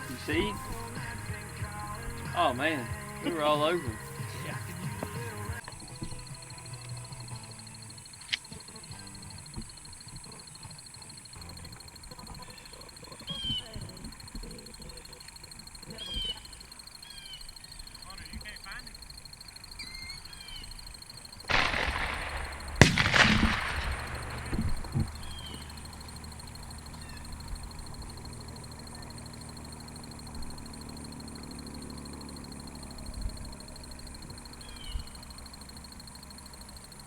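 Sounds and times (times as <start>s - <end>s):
shotgun shots: 0.0s - 5.4s, 21.5s - 29.2s
bird chirps: 0.0s - 37.0s.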